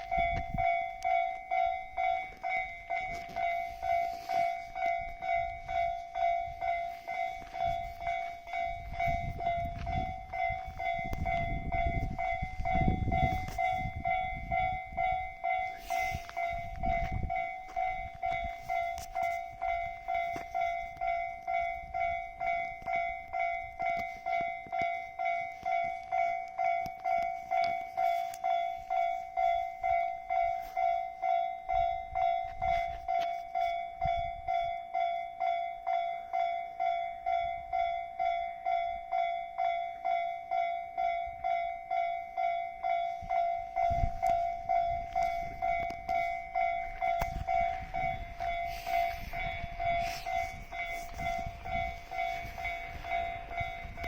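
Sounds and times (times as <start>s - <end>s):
level crossing warning bell: 0.0s - 54.0s
train rumble: 0.0s - 54.0s.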